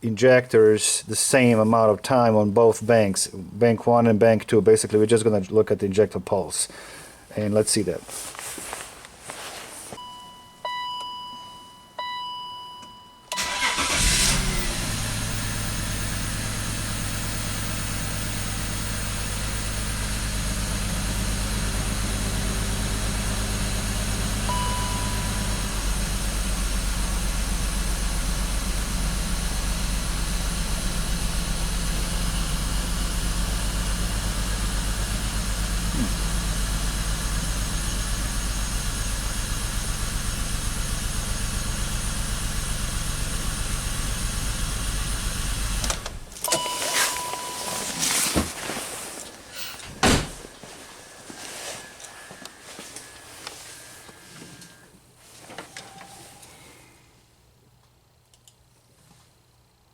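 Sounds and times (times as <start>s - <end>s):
car engine starting and idling: 13.3s - 48.0s
electronic chime tones: 24.5s - 25.8s, 46.5s - 48.1s.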